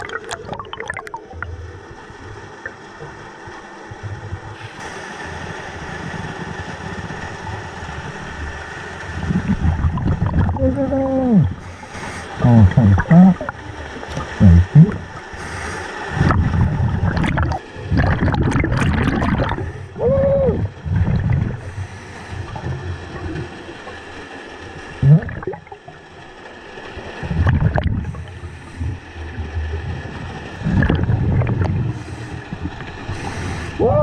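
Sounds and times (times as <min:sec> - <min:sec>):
exhaust bubbles bubbling: 0:00.0 - 0:34.0
diver breathing through regulator: 0:11.3 - 0:23.0, 0:27.8 - 0:29.3, 0:30.6 - 0:33.8.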